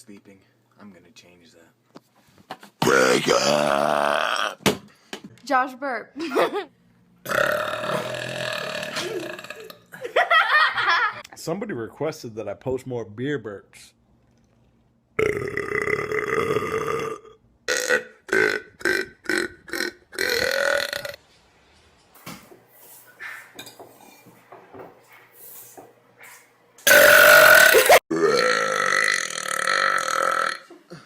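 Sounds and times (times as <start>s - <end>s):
person belching: 2.8s - 4.6s, 7.2s - 9.8s, 15.2s - 21.2s, 26.9s - 30.7s.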